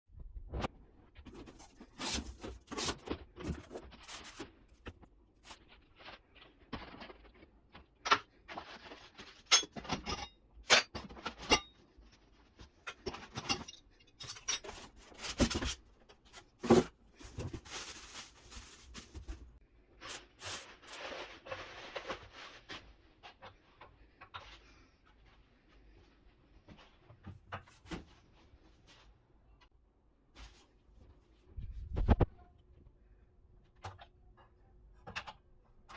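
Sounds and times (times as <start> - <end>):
rustling: 14.6 - 23.2.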